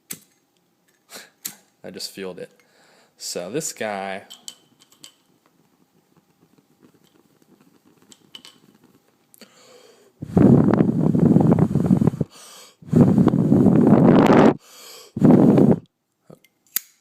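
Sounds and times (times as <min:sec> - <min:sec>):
breath blowing into microphone: 0:09.4 - 0:15.8.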